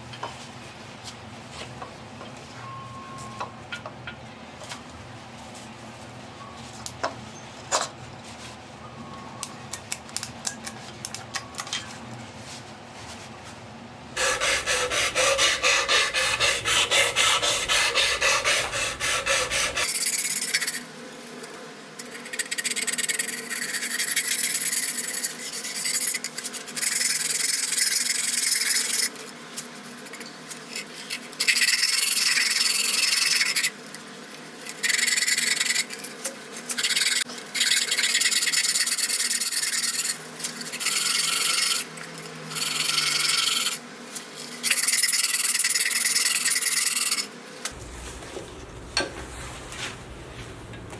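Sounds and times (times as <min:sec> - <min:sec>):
rasp rubbing on wood: 0:14.2 - 0:20.0.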